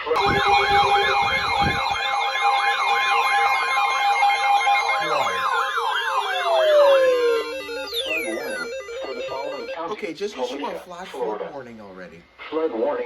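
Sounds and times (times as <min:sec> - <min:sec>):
two-note alarm tone: 0:00.0 - 0:09.8
electronic siren wailing: 0:00.0 - 0:09.9.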